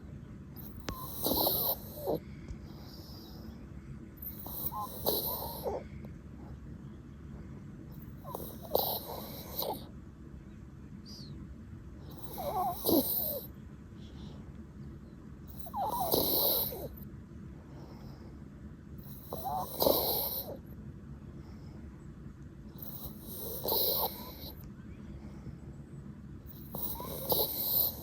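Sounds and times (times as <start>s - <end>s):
dog snoring: 0.6s - 3.6s, 4.2s - 6.5s, 7.9s - 9.9s, 12.0s - 13.5s, 15.5s - 17.0s, 19.0s - 20.6s, 22.7s - 24.6s, 26.5s - 28.0s.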